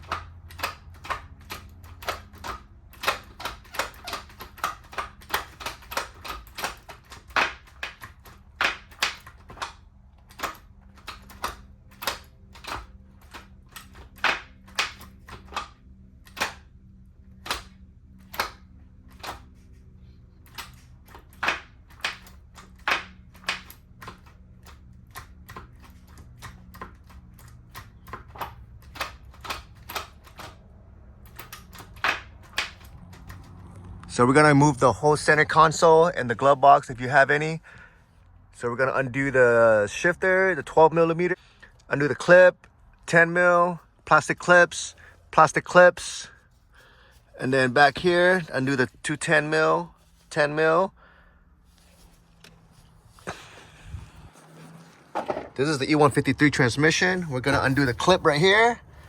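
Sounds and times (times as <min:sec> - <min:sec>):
sharp irregular clicks and taps: 0:00.0 - 0:19.6, 0:20.4 - 0:34.1.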